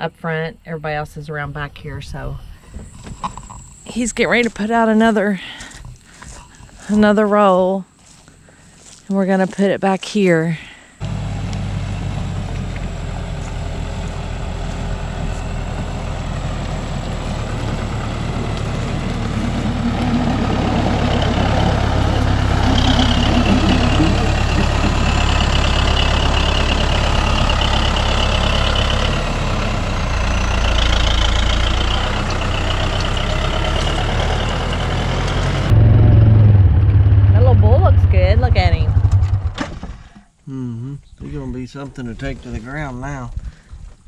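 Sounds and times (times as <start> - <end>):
machine engine running: 11.0 - 40.0.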